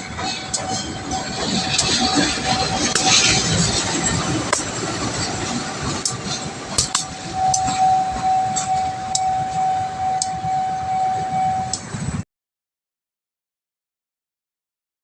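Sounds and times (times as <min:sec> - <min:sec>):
sharp clicks: 0:06.8 - 0:07.7
level-crossing alarm tone: 0:06.9 - 0:11.8.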